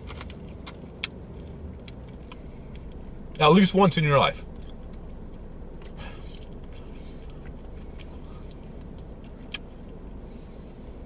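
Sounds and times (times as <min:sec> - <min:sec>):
low rumble inside car: 0:00.0 - 0:11.0
person chewing chicken wing: 0:04.6 - 0:10.2.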